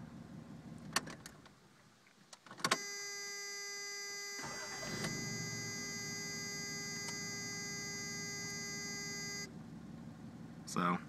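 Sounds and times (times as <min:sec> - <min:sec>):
electronic warning buzzer: 0:02.8 - 0:09.5
engine idling: 0:04.4 - 0:11.0.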